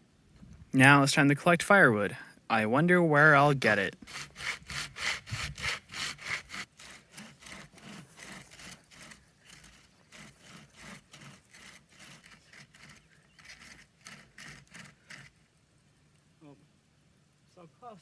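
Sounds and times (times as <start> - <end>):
hand saw cutting wood: 3.9 - 15.4.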